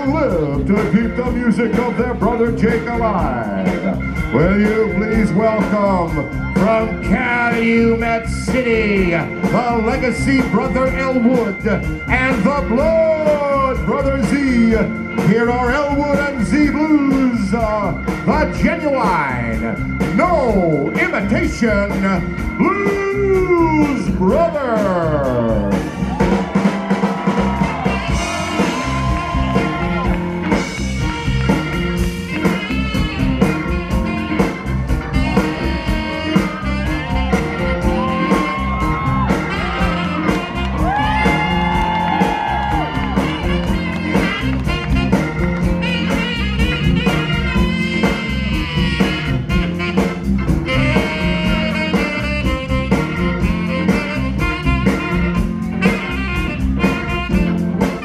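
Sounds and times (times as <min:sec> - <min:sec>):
blues band with horns playing: 0:00.0 - 0:58.0
steady drum beat: 0:00.0 - 0:58.0
held horn lines: 0:43.2 - 0:58.0.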